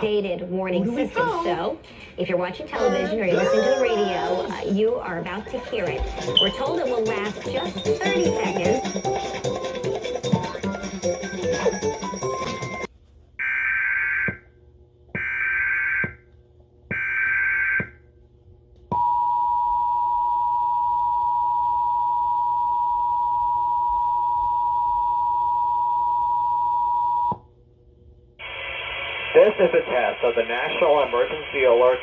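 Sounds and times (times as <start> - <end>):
two-tone attention signal: 6.4 - 6.8.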